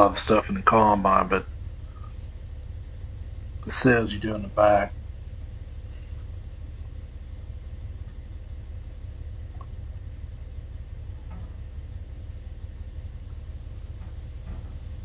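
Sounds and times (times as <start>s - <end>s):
engine idling: 0.0s - 15.0s
faint clicks: 9.5s - 15.0s.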